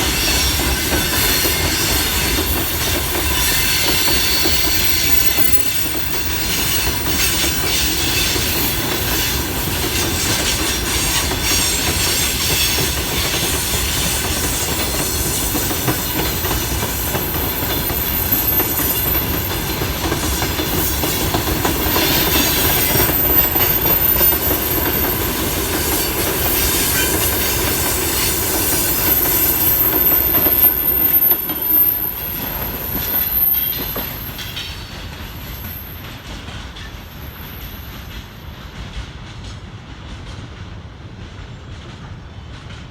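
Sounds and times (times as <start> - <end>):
train wheels rumbling and clattering: 0.0 - 42.9
wheel squeal: 0.1 - 13.0, 15.0 - 36.1.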